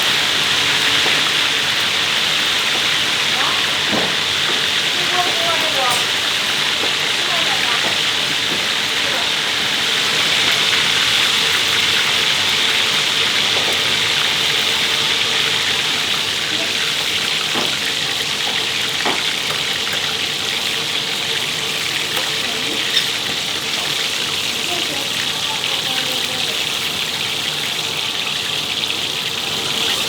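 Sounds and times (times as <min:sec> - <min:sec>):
patties sizzling in hot oil: 0:00.0 - 0:30.0.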